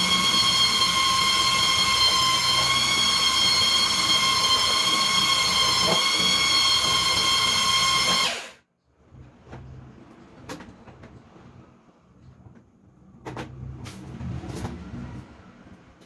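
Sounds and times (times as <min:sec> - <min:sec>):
electric mixer whining: 0:00.0 - 0:08.6.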